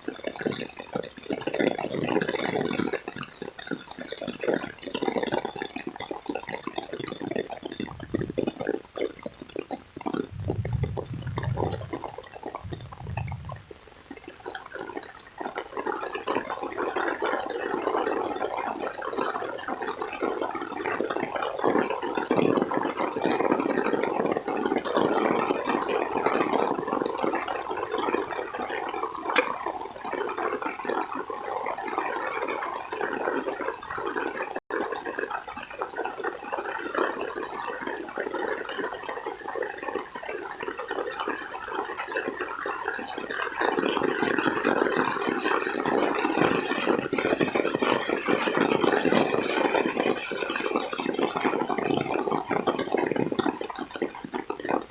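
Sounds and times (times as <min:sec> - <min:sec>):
heavy rain pouring: 0:07.7 - 0:08.5, 0:10.2 - 0:14.0.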